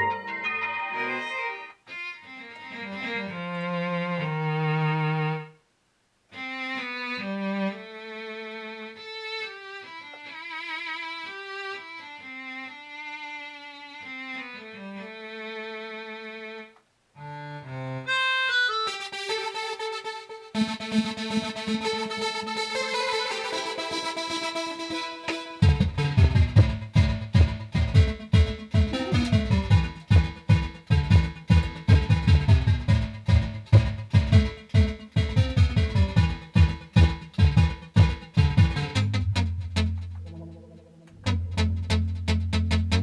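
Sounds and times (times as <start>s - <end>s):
bright synth sound: 0.0s - 1.8s, 40.2s - 41.3s
keytar violin-like melody: 0.0s - 5.6s, 6.4s - 19.7s.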